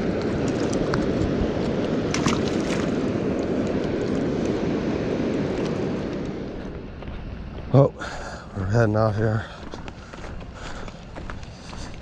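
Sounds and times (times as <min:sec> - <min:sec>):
water rushing over spillway: 0:00.0 - 0:04.2.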